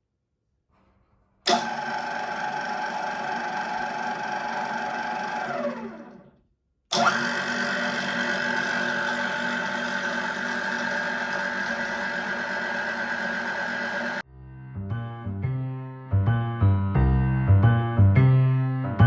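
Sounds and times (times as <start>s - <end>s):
drill press gear whine: 1.5s - 6.3s, 6.9s - 14.2s.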